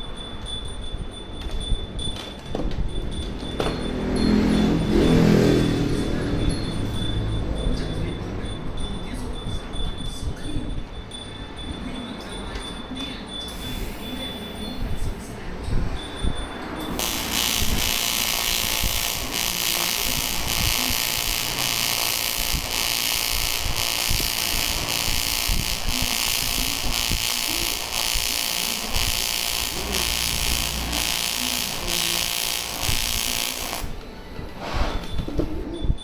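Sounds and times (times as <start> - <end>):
welding arc buzzing hiss: 16.8 - 35.6.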